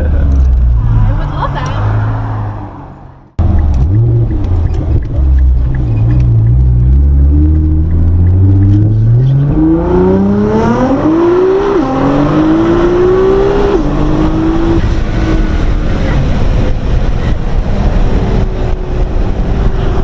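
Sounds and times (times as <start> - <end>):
car engine accelerating hard: 0.0 - 20.0.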